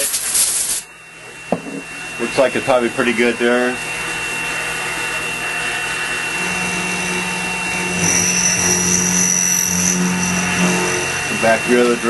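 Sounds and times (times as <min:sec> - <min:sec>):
milling spindle high whine: 0:00.0 - 0:12.0
end mill cutting aluminium: 0:05.2 - 0:12.0.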